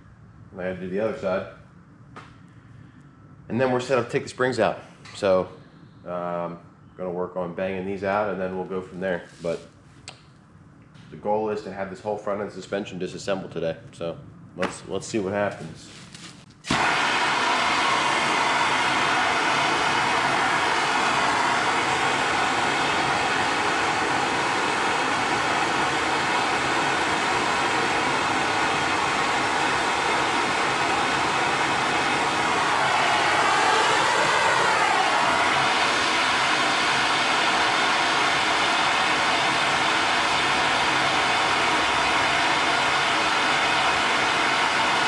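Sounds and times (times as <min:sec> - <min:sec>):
gas torch hissing: 0:16.6 - 0:45.0.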